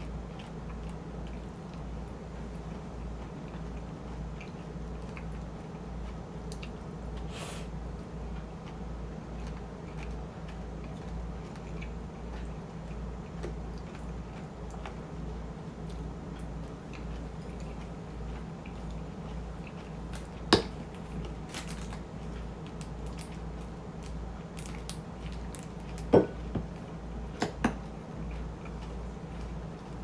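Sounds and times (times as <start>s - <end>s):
wet chewing: 0.2s - 26.1s.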